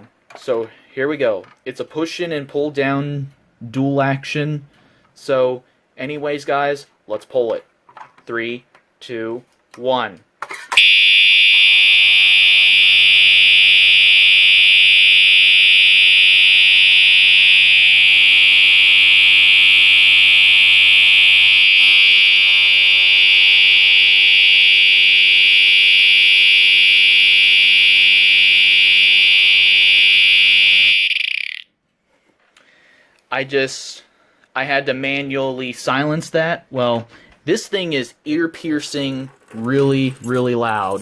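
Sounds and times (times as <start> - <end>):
continuous fire alarm horn: 10.8 - 31.6.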